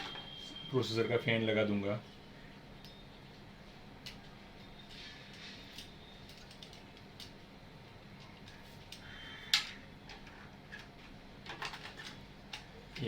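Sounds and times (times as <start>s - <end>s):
clicks and knocks of cpu fan handling: 8.9s - 13.0s.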